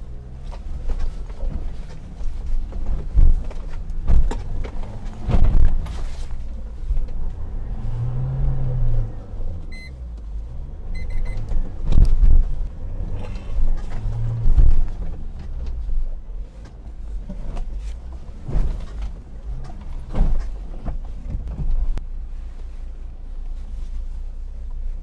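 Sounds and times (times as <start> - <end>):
diesel engine running at low speed: 0.0 - 25.0
knocks and thumps from suspension: 0.3 - 7.2, 11.3 - 15.9, 16.5 - 22.0.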